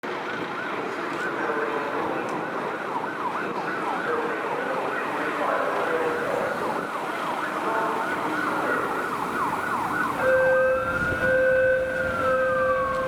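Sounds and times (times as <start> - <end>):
electronic siren yelping: 4.6 - 13.0.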